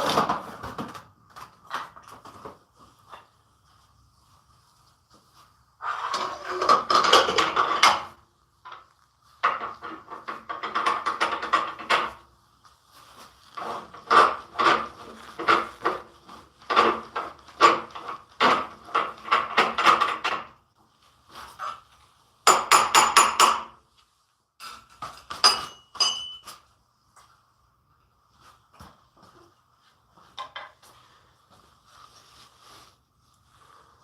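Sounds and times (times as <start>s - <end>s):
woodworking tools knocking: 22.5s - 23.8s.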